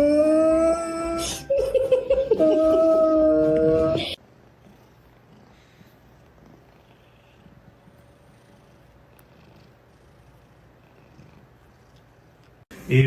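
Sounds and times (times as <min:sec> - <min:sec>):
cat purring: 0:03.8 - 0:12.6.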